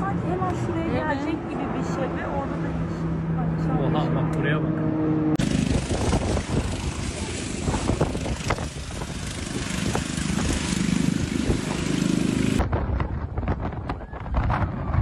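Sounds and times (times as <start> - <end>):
vehicle engine running: 4.9 - 12.7
wind buffeting microphone: 5.4 - 15.0.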